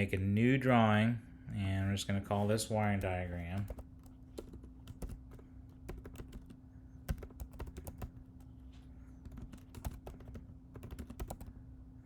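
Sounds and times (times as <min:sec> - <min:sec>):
faint steady hum: 0:00.0 - 0:12.0
keyboard typing: 0:02.8 - 0:08.6, 0:09.2 - 0:11.6.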